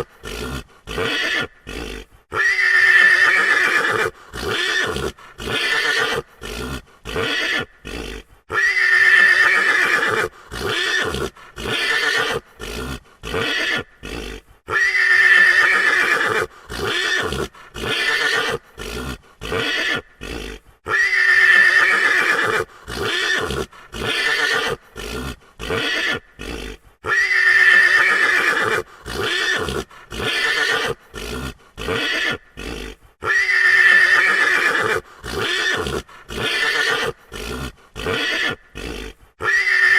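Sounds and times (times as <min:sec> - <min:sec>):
horse whinnying: 0:00.0 - 0:39.9.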